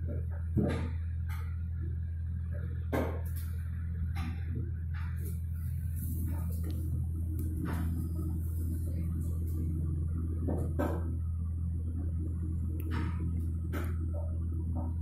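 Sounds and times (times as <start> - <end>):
refrigerator compressor humming: 0.0 - 15.0.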